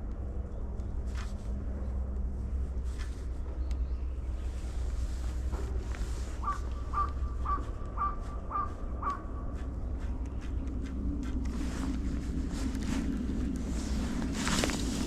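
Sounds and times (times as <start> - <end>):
steady low rumble: 0.0 - 15.0
crow cawing: 6.4 - 9.3.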